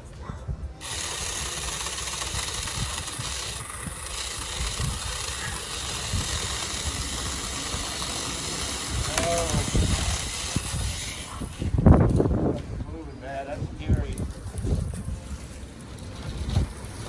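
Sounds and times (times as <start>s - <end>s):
chainsaw cutting branch: 0.8s - 12.3s.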